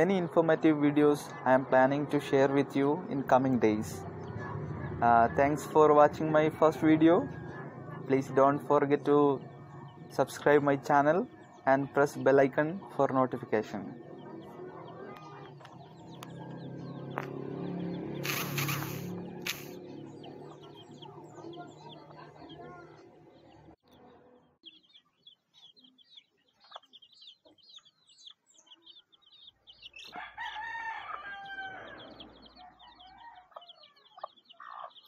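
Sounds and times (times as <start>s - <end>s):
chicks peeping: 0.0s - 24.0s, 24.6s - 35.0s
rooster crowing: 30.1s - 34.0s.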